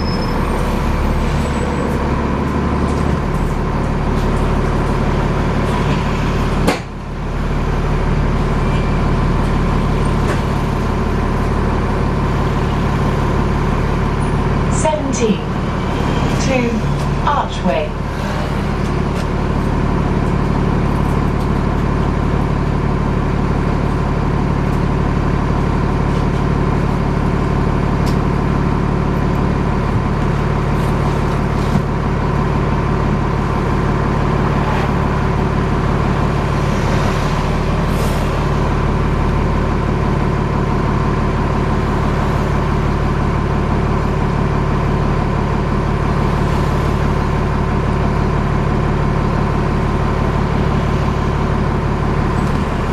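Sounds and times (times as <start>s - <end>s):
bus engine hum: 0.0s - 52.9s.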